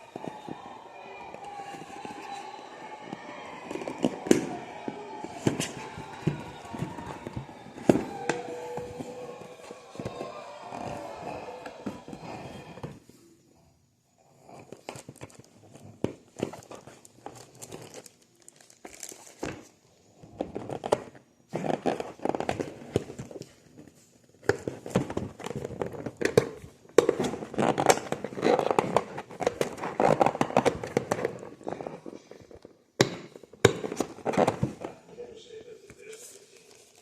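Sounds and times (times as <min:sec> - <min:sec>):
packaging crinkling and rustling: 0:16.5 - 0:19.7.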